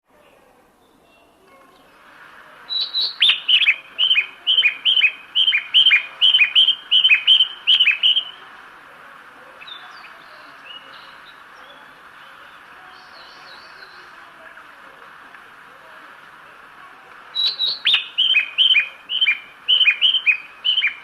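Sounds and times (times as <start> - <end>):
station ambience hiss: 0.6 - 21.0
bird-chirp guidance sound: 9.5 - 14.7, 17.3 - 21.0.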